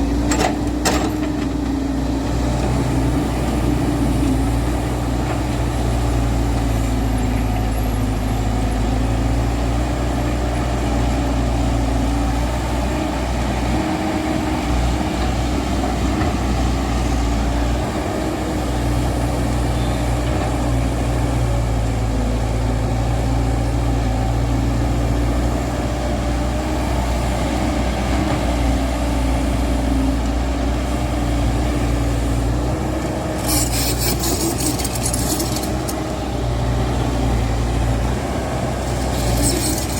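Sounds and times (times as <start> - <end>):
excavator diesel engine running: 0.0 - 39.9
high-pitched rattle: 33.4 - 36.0, 38.8 - 39.9.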